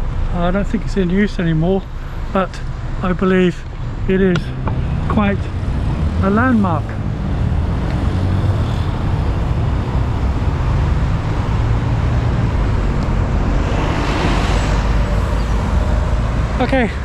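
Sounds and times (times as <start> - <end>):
traffic rumble and hiss: 0.0 - 17.0
vehicle passing close: 4.4 - 17.0.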